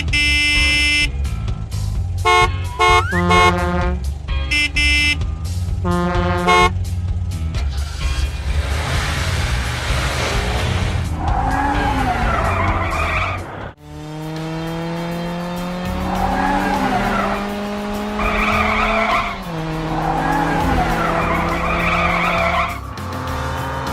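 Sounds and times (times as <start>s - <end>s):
wavering tire squeals: 7.7s - 13.8s, 15.8s - 23.9s.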